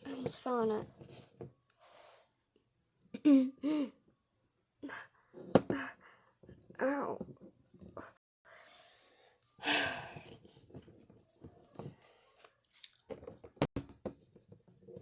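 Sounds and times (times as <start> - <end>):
person wheezing gasp: 9.6 - 10.3.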